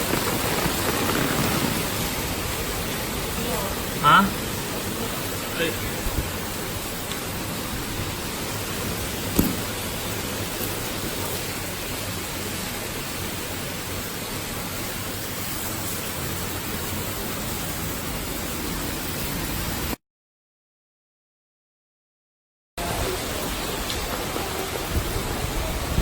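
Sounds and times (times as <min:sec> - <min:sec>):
heavy rain and wind: 0:00.0 - 0:20.0, 0:22.8 - 0:26.0
sharp knock: 0:09.3 - 0:09.7.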